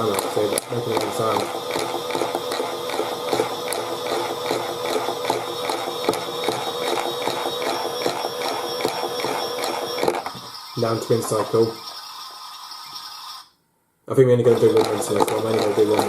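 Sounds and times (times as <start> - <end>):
toy motor high tone: 0.0 - 13.6, 14.4 - 16.0.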